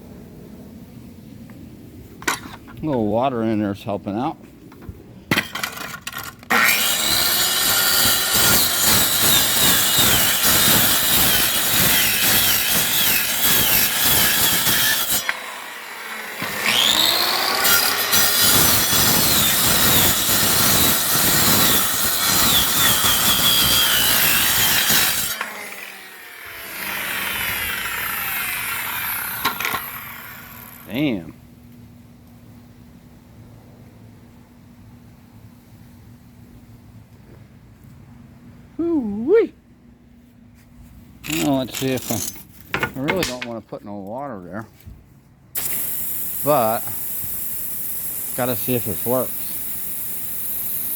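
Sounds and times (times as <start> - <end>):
concrete saw cutting concrete: 6.5 - 31.2, 45.6 - 47.1, 48.2 - 49.5.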